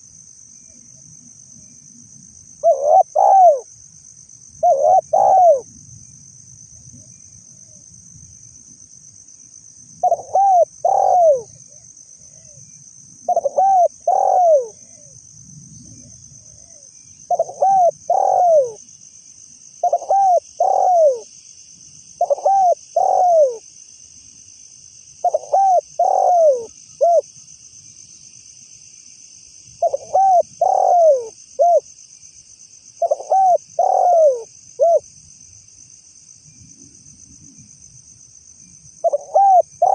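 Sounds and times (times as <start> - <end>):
high-pitched insect drone: 0.0 - 7.8, 9.6 - 39.9
dove cooing: 2.6 - 3.7, 4.6 - 5.7, 10.0 - 12.6, 13.3 - 15.2, 16.6 - 18.8, 19.8 - 21.3, 22.2 - 23.6, 25.2 - 27.3, 29.8 - 31.9, 33.0 - 35.0, 39.0 - 39.9.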